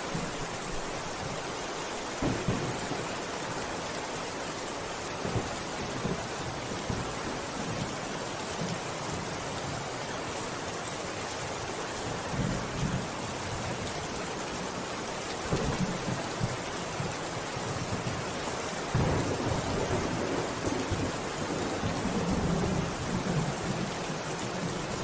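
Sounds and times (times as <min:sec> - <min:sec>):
rain hiss: 0:00.0 - 0:25.0
thunder rolling: 0:02.2 - 0:03.2.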